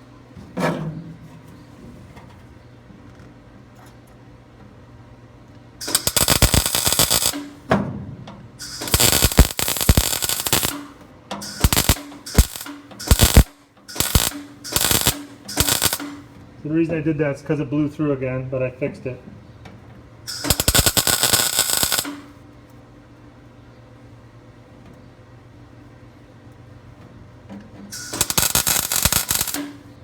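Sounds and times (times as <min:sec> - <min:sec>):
welding arc crackling: 0:05.8 - 0:07.7, 0:08.6 - 0:16.3, 0:20.3 - 0:22.4, 0:27.9 - 0:29.9.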